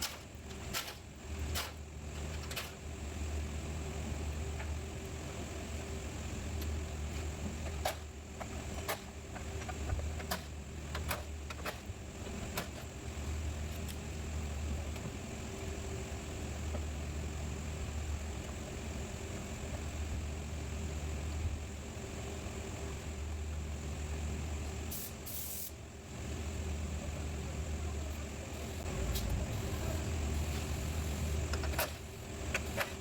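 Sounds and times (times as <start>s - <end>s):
low mechanical hum: 0.0s - 33.0s
hand tools clicking and knocking: 7.6s - 12.9s.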